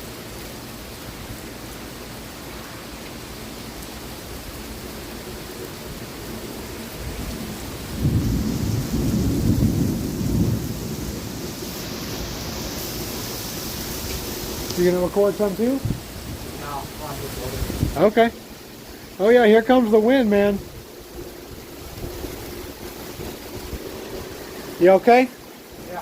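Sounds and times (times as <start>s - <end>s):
steady rain: 0.0s - 26.0s
thunder rumble: 5.4s - 26.0s.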